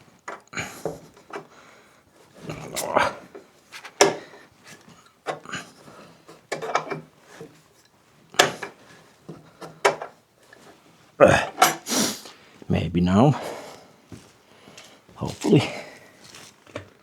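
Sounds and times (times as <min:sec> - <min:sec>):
car jack scraping and clicking: 0:06.3 - 0:07.6.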